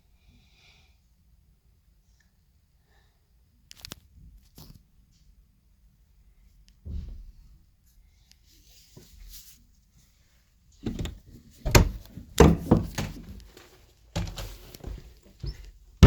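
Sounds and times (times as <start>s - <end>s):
thump: 6.8s - 7.4s
loud thuds and knocks: 10.8s - 13.3s.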